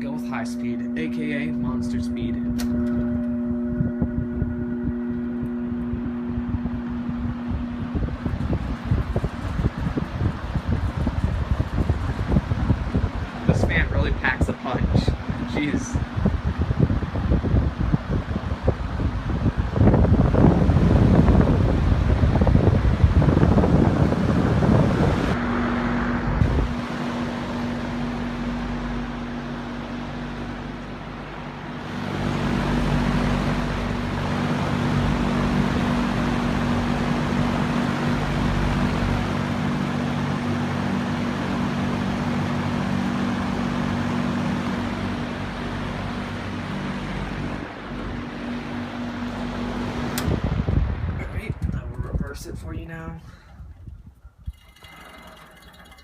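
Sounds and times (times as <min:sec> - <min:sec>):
fan air rushing: 0:00.0 - 0:56.0
fan motor electrical hum: 0:00.0 - 0:56.0
wind buffeting microphone: 0:01.6 - 0:28.7, 0:47.4 - 0:54.8.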